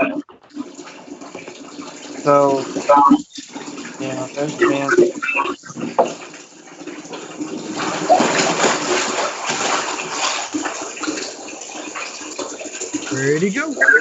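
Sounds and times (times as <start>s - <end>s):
water sloshing: 0.0s - 14.0s
person falling into bathwater: 7.2s - 11.4s.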